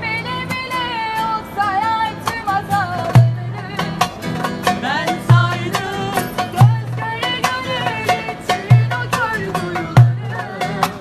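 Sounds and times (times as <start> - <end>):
plucked string accompaniment: 0.0 - 11.0
woman singing ornamented melody: 6.4 - 9.6.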